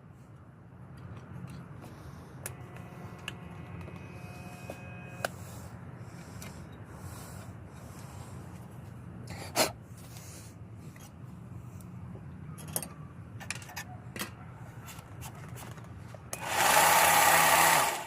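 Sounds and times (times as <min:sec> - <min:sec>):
parts clicking and knocking: 0:00.9 - 0:04.1, 0:11.8 - 0:16.9
belt sander running: 0:16.4 - 0:18.0.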